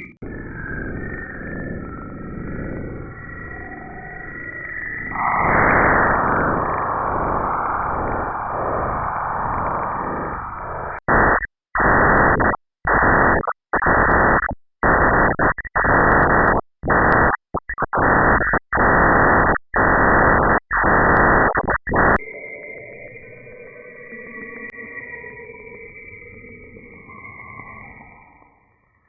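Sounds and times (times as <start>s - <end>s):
bursts of static hiss: 5.1s - 22.2s.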